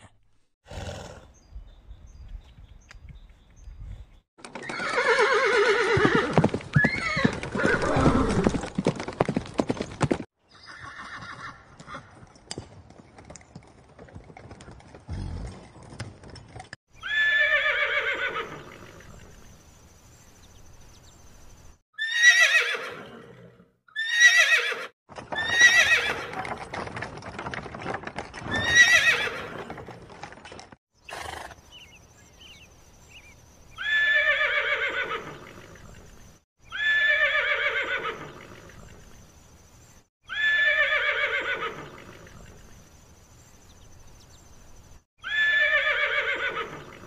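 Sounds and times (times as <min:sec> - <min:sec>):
horses neighing: 0:00.7 - 0:01.3, 0:04.6 - 0:08.6, 0:10.5 - 0:12.1, 0:17.0 - 0:19.4, 0:22.0 - 0:26.8, 0:28.4 - 0:30.3, 0:33.8 - 0:39.0, 0:40.3 - 0:42.6, 0:45.2 - 0:47.0.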